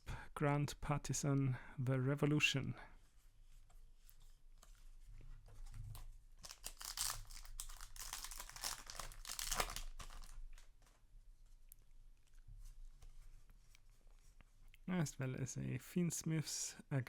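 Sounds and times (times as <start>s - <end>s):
foil wrapper crinkling: 6.4s - 10.7s
wrapper tearing: 6.4s - 10.7s.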